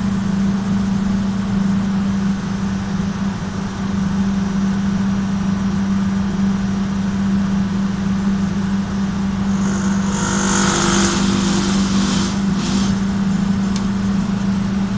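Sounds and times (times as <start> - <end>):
electric motor humming: 9.2 - 14.3.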